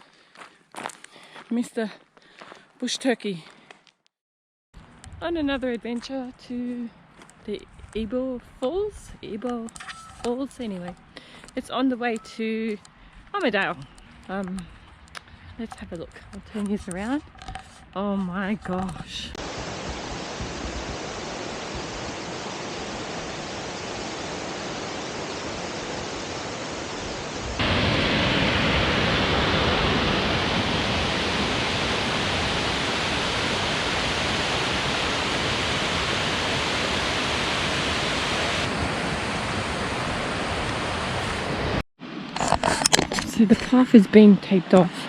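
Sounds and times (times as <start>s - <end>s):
waterfall rushing: 19.4s - 41.8s.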